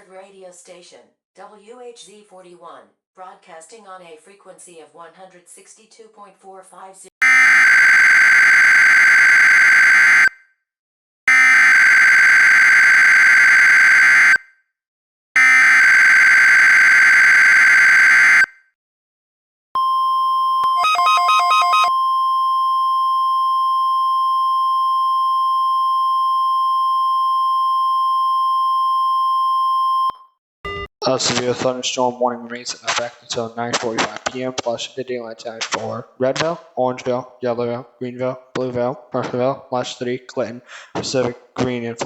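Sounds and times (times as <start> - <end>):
steady high warning beep: 7.2 - 10.3, 11.3 - 14.4, 15.4 - 18.5, 19.8 - 30.2.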